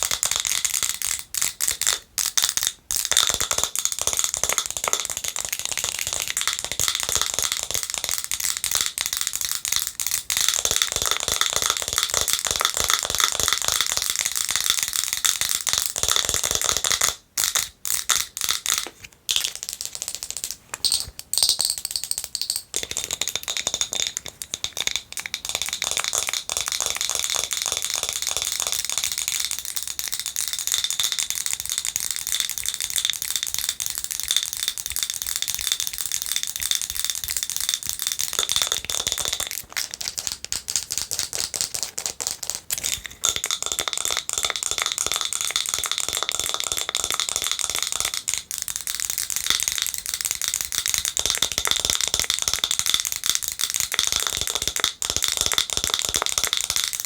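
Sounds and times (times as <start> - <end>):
nails tapping on glass jar: 0.0 - 57.0.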